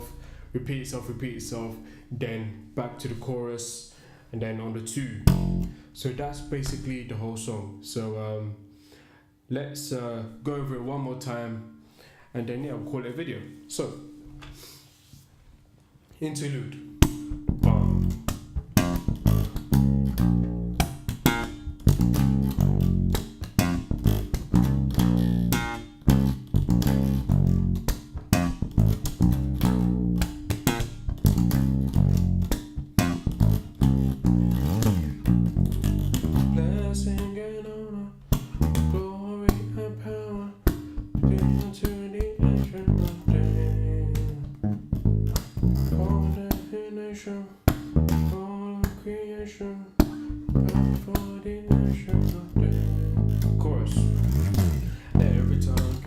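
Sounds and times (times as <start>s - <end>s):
electric bass plucked notes: 0.0s - 2.6s, 5.0s - 7.2s, 16.8s - 46.8s, 47.7s - 49.2s, 50.0s - 56.0s.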